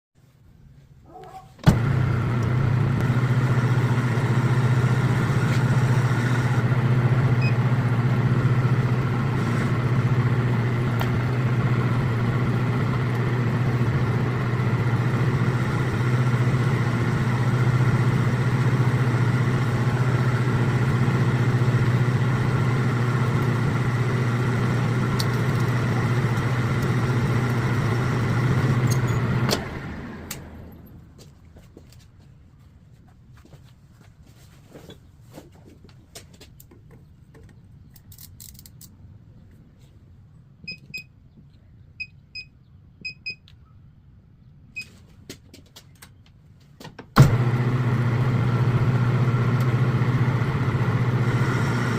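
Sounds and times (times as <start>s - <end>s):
metal lathe motor humming: 1.7s - 30.5s, 47.3s - 51.9s.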